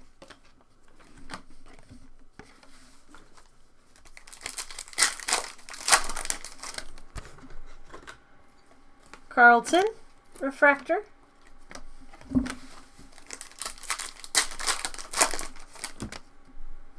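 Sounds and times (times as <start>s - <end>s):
foil wrapper crinkling and tearing: 3.3s - 7.2s, 12.5s - 16.3s.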